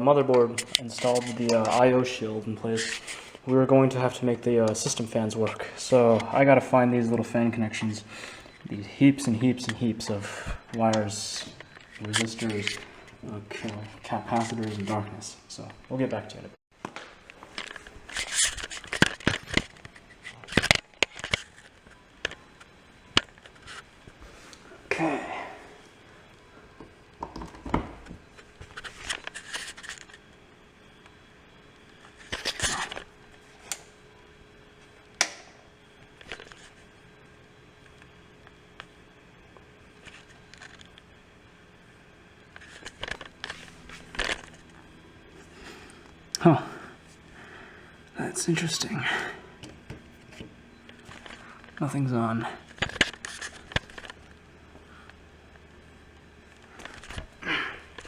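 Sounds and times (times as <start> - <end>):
low steady hum: 0.0 - 58.0
handling clicks and rustles: 0.2 - 34.1, 37.8 - 46.4, 47.0 - 58.0
clicks and taps of computer parts: 26.8 - 30.2, 35.2 - 35.6, 52.7 - 54.2.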